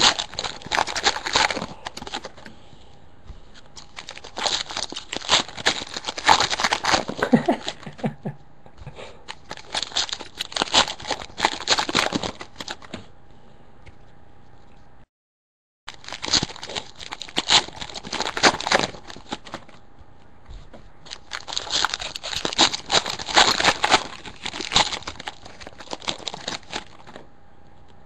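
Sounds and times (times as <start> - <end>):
foil wrappers crinkling and tearing: 0.0 - 2.5, 3.5 - 8.1, 9.3 - 13.0, 15.9 - 19.8, 21.0 - 27.3
cards rustling: 0.0 - 2.6, 3.3 - 8.0, 9.3 - 13.1, 15.9 - 27.3.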